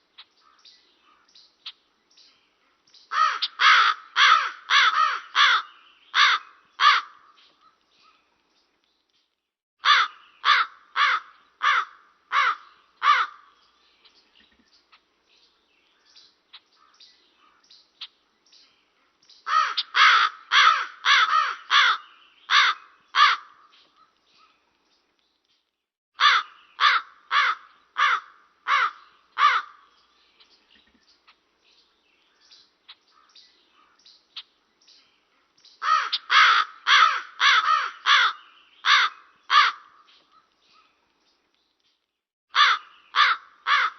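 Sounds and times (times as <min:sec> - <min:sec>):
raven cawing: 0:03.1 - 0:07.4, 0:09.8 - 0:13.6, 0:19.5 - 0:23.7, 0:26.2 - 0:29.9, 0:35.8 - 0:40.1, 0:42.5 - 0:43.9.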